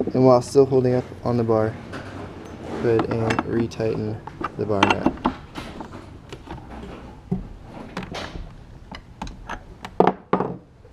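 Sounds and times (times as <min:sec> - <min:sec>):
wrench scraping: 0:01.9 - 0:07.1.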